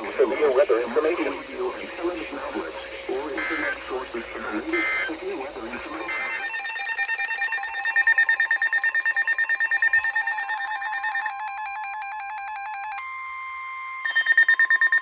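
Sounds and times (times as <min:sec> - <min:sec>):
electronic emergency alert tones: 0:03.2 - 0:15.0.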